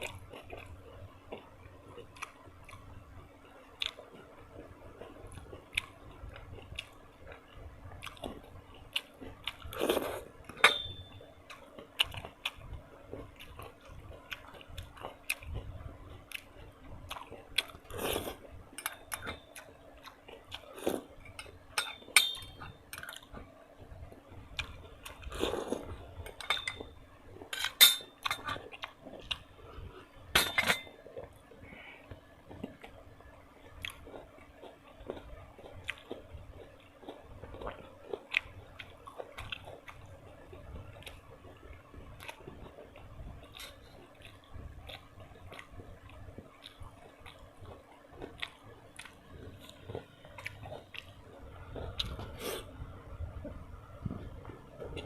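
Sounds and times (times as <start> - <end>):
faint steady hum: 0.0 - 55.0
person chewing food: 0.0 - 55.0.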